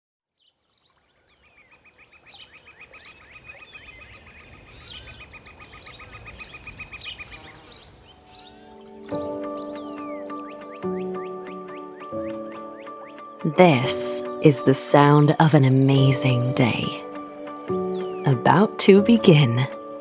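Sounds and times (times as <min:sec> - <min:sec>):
birds chirping and calling: 0:00.8 - 0:13.3, 0:17.7 - 0:18.8
rapid bird trill: 0:01.5 - 0:13.4.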